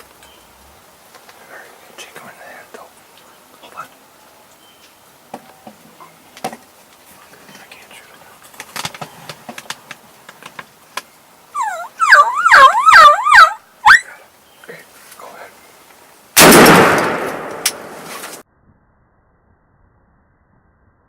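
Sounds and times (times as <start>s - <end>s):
faint clicks and rustling: 4.8s - 11.1s
loud turkey calls: 11.6s - 14.2s.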